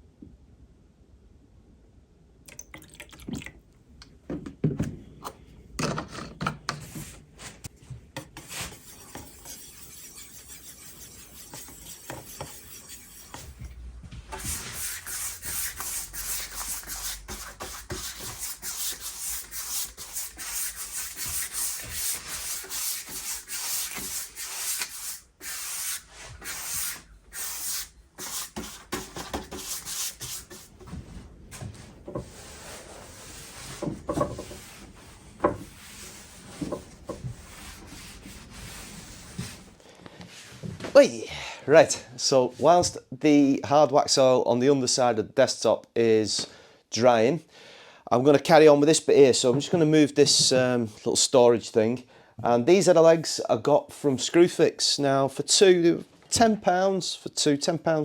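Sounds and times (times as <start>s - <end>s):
knocks and handling sounds: 4.1s - 9.4s, 28.5s - 41.0s
sanding by hand on wood: 8.2s - 31.0s, 31.6s - 39.8s.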